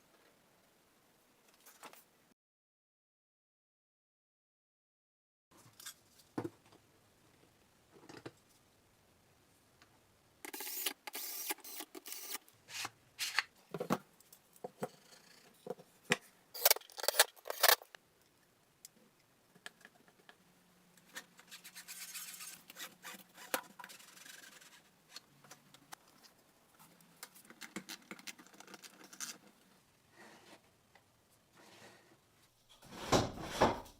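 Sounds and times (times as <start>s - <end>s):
scraping and rubbing: 16.6s - 18.0s, 21.0s - 25.3s.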